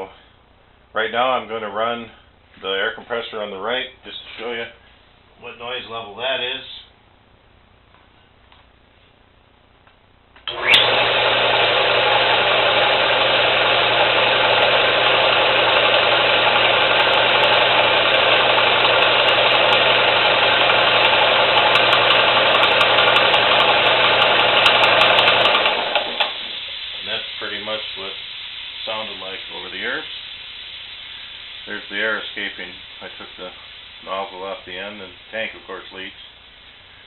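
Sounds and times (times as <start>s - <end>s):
air compressor running: 10.4s - 34.3s.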